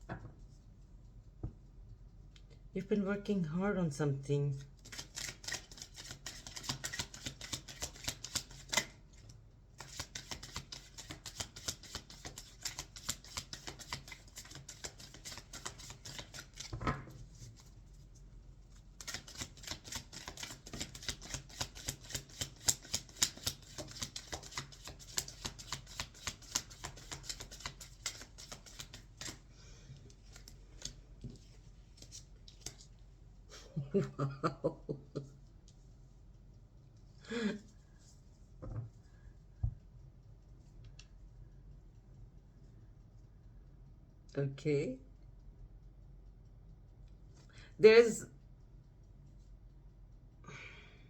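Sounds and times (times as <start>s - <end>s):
cards being shuffled: 4.8s - 9.0s, 9.8s - 16.8s, 19.0s - 29.4s, 30.2s - 31.0s, 32.0s - 32.9s
soft knock: 38.6s - 38.9s.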